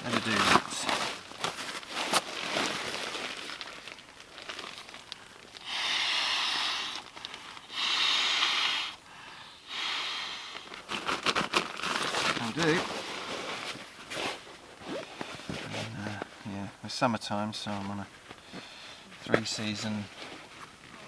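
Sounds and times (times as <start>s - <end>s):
sleeping mat crinkling: 0.0s - 5.8s, 6.9s - 7.8s, 10.6s - 16.6s, 17.3s - 21.0s.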